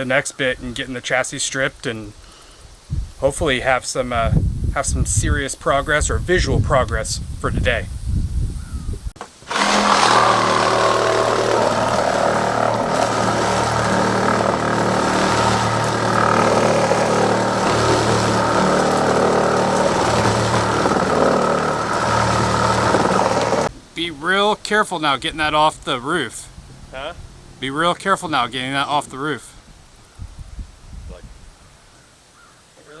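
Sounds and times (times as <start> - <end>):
reciprocating saw cutting panel: 9.2 - 23.7.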